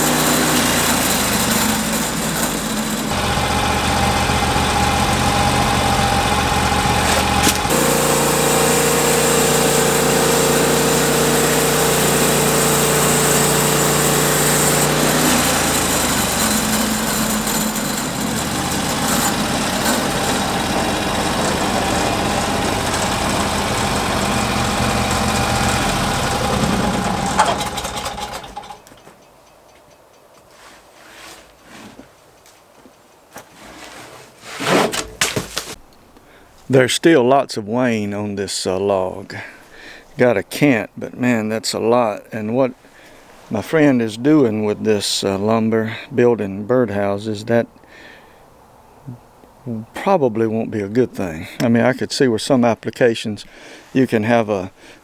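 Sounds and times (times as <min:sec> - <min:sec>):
saw cutting through log: 0:00.0 - 0:28.8
sawmill engine running under load: 0:00.0 - 0:28.8.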